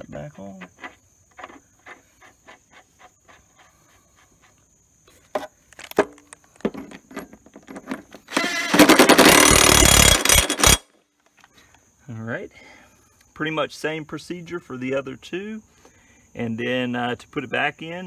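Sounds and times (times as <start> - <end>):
impact wrench hammering: 8.7 - 10.8.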